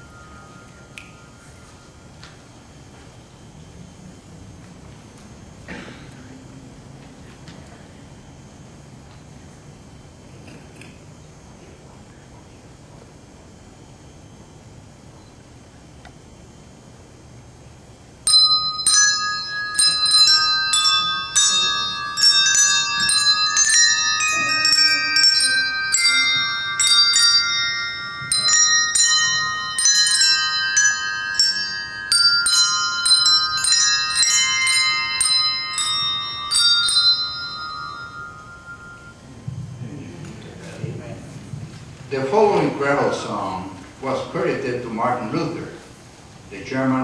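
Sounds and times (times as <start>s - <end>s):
handbell choir playing hymn: 0.0s - 2.0s, 18.2s - 39.3s.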